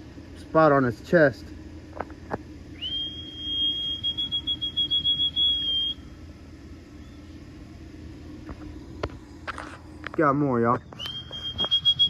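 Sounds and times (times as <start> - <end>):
person whistling high note: 2.8 - 6.0, 11.0 - 12.0.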